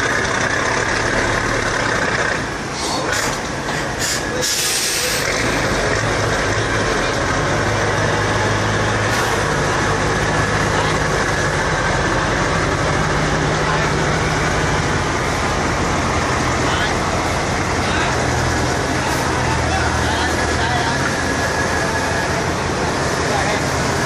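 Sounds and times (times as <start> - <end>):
heavy diesel machinery running: 0.0 - 24.0
short hisses: 2.7 - 5.4.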